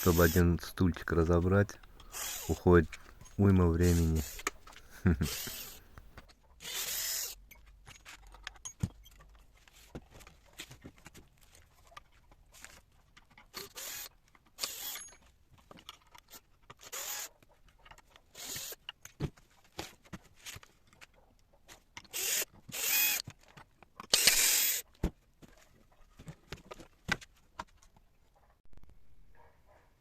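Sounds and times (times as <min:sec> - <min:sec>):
short raspy scrapes: 0:00.0 - 0:06.2.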